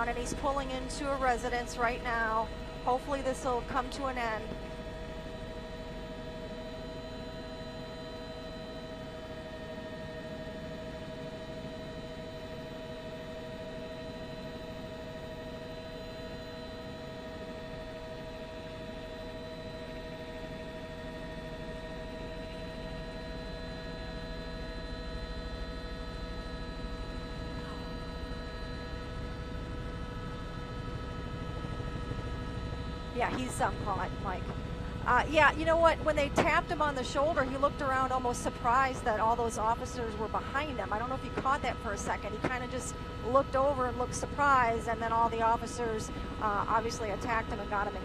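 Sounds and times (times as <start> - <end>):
helicopter cabin hum: 0.0 - 48.0
whining tones: 25.3 - 47.9.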